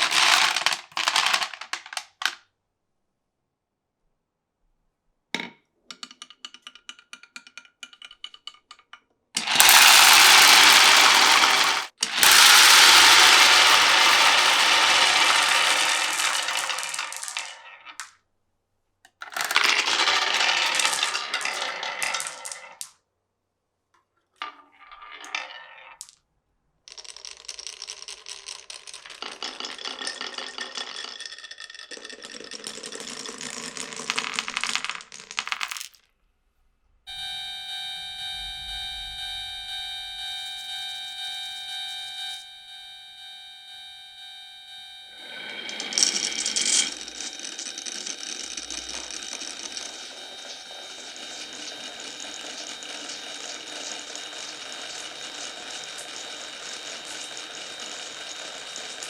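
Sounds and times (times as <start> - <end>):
marbles rolling and clattering: 0.0 - 2.4, 9.4 - 18.2, 19.1 - 23.0, 24.4 - 26.2, 26.8 - 36.1, 45.1 - 59.0.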